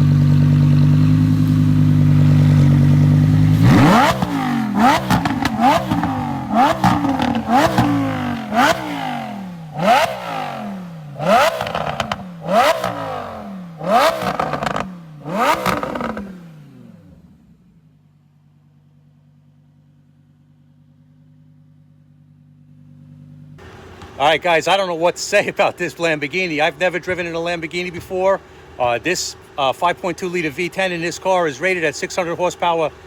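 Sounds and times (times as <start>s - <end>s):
car engine revving: 0.0s - 18.0s
car engine idling: 0.0s - 33.0s
exhaust cracks: 0.0s - 33.0s.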